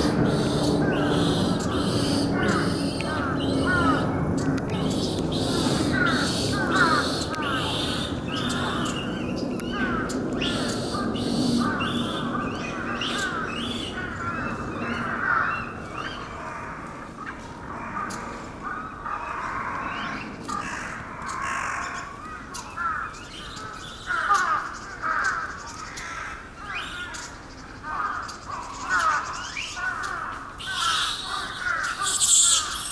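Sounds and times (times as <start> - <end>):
harsh animal calls: 0.0 - 9.0, 30.6 - 32.9
steady background rush: 0.0 - 15.9.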